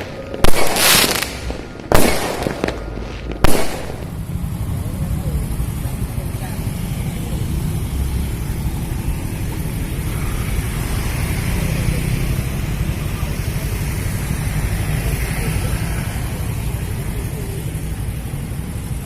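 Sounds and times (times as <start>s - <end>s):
traffic rumble: 0.0s - 19.0s
faint murmur of voices: 8.9s - 18.5s.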